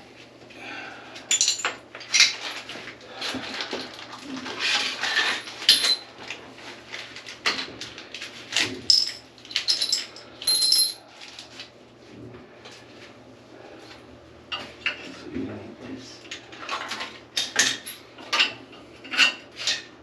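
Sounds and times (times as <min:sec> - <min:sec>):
hard objects clattering: 0:01.2 - 0:06.4, 0:07.2 - 0:11.0.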